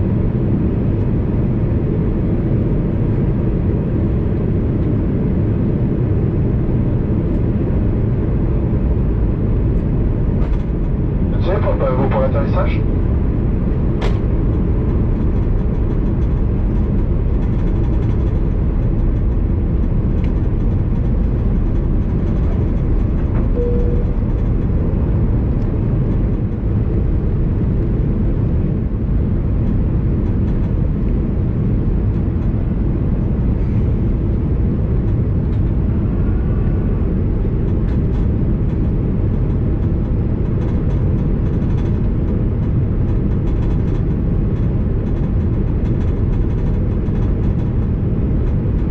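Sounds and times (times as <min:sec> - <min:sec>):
airliner cabin engine rumble: 0:00.0 - 0:48.9
short faint beep: 0:23.6 - 0:24.2.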